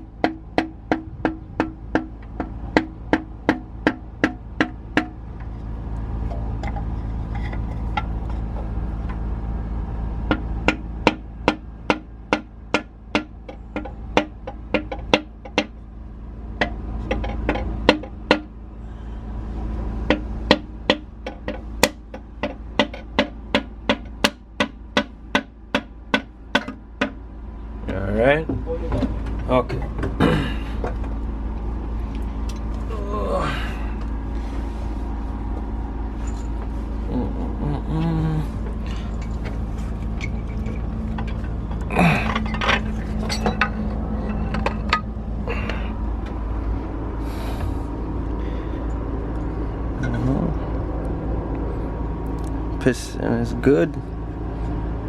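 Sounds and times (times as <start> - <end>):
held low notes: 0.0 - 14.8, 26.4 - 55.0.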